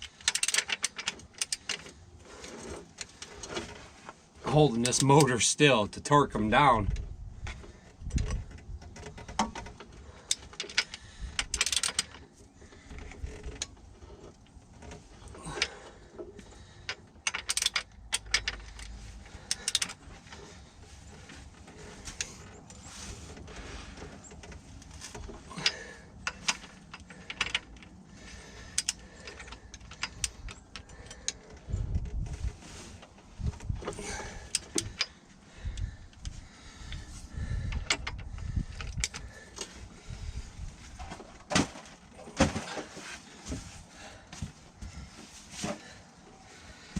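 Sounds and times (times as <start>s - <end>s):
ratchet wrench clicking: 0.2s - 1.8s, 19.5s - 20.0s.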